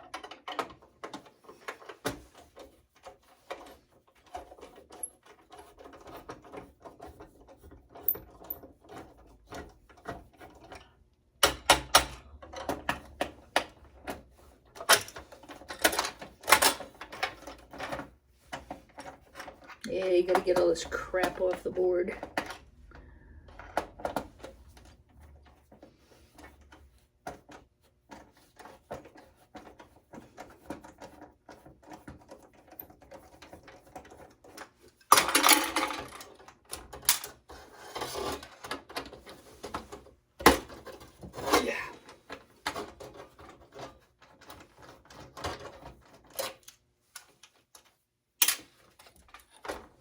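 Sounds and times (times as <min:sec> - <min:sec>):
computer parts clicking and clattering: 0:27.5 - 0:37.4.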